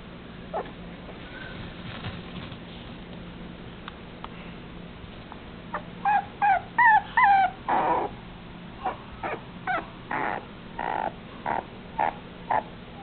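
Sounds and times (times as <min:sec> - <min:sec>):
puppy whining: 0:00.5 - 0:00.8, 0:05.7 - 0:08.2, 0:08.8 - 0:13.0
puppy yipping: 0:00.5 - 0:00.8, 0:05.7 - 0:08.2, 0:08.8 - 0:13.0.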